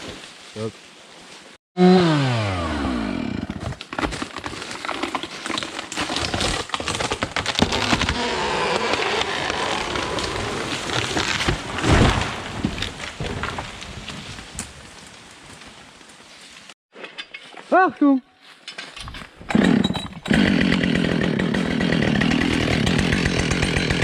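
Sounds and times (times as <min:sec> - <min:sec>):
branches cracking and snapping: 0:03.4 - 0:16.8
tree hitting the ground: 0:03.6 - 0:15.7
chainsaw revs falling: 0:07.4 - 0:12.3, 0:19.4 - 0:24.0.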